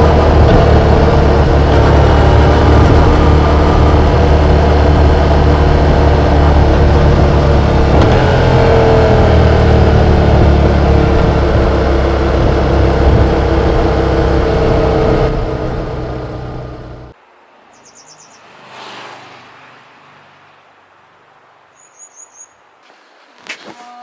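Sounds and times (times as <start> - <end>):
motorcycle engine running: 0.0 - 17.2
road noise: 0.0 - 23.8.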